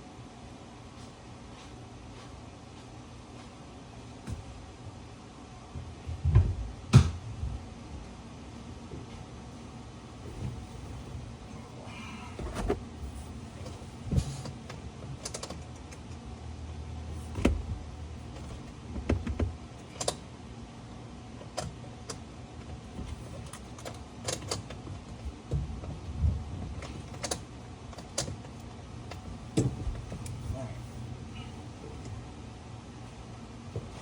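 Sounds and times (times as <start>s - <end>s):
tools and car parts clicking: 13.6s - 16.1s, 19.1s - 20.2s
faint low hum: 20.8s - 34.0s.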